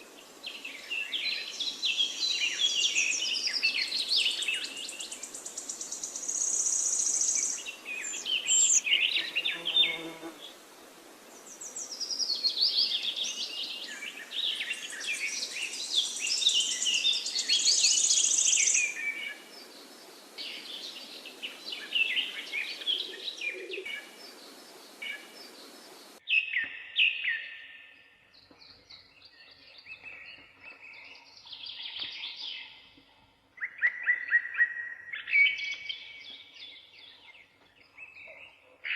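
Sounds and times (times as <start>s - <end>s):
steady hiss: 0.0s - 26.2s
birds chirping: 0.5s - 10.6s, 11.3s - 27.4s.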